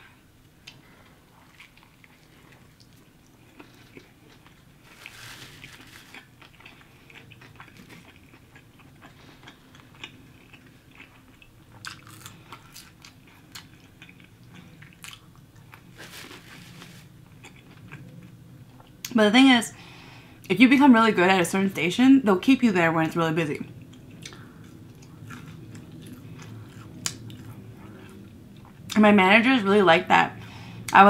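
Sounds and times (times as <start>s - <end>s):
person chewing food: 0.6s - 19.1s, 23.8s - 29.0s.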